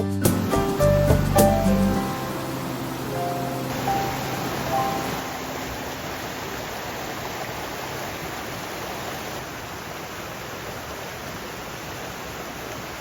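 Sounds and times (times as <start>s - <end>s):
stream rushing water: 0.3s - 13.0s.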